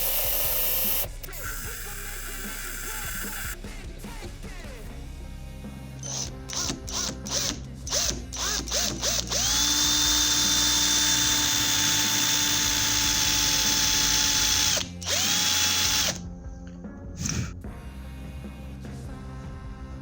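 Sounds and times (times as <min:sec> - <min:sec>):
small power tool motor whining: 0:00.0 - 0:03.6, 0:06.1 - 0:16.2.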